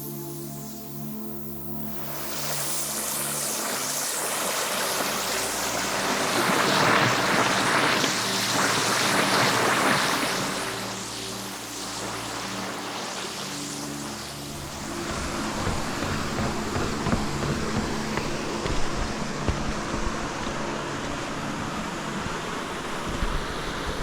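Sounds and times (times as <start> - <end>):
soft background music: 0.0 - 24.0
rushing stream water: 2.8 - 24.0
wind rumble on microphone: 14.5 - 24.0.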